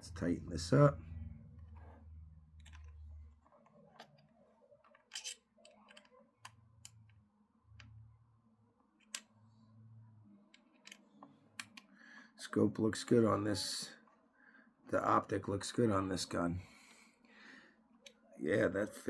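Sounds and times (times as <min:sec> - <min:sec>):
small metal clicks and taps: 0:11.6 - 0:11.9.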